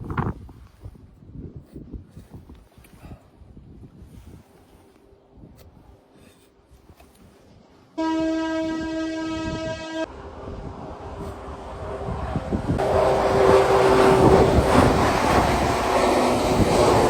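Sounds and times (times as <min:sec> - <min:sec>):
passing train rumble: 0:07.9 - 0:17.0
train horn blast: 0:08.0 - 0:17.0.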